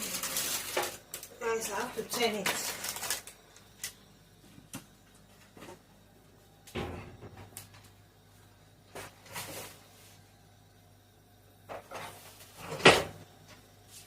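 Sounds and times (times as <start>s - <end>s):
faint steady low hum: 0.0s - 14.0s
knocks and clatters in oven: 6.7s - 7.8s, 11.7s - 13.3s.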